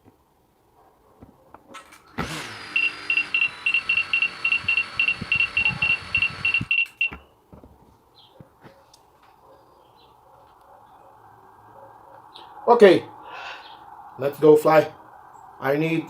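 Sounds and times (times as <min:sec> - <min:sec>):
drone motors whining: 0:02.1 - 0:07.0
rapid high beeps: 0:02.7 - 0:07.2.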